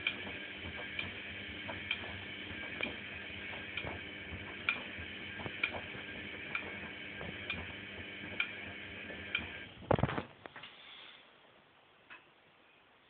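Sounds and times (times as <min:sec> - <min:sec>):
washing machine humming: 0:00.0 - 0:10.3.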